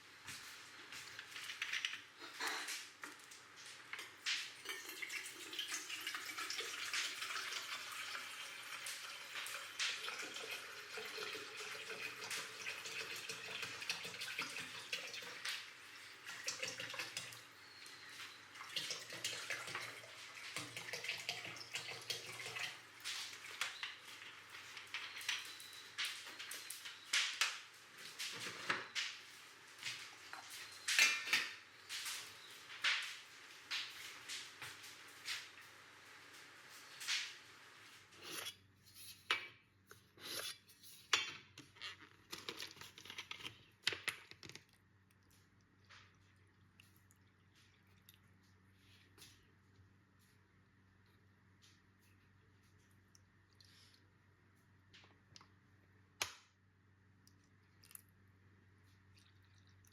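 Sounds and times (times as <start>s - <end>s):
water running and dripping: 0.1s - 38.5s, 57.2s - 59.9s.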